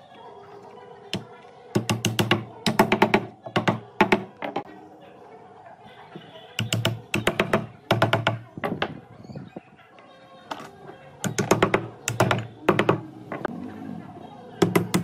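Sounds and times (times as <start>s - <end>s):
hammering on wood: 1.1s - 4.7s, 6.6s - 9.0s, 11.2s - 13.4s, 14.6s - 15.0s.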